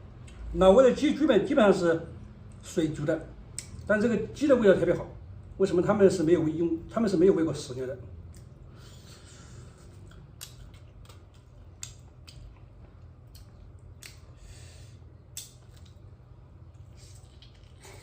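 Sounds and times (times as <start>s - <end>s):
low steady hum: 0.0s - 18.0s
person chewing food: 8.2s - 14.4s, 15.2s - 18.0s.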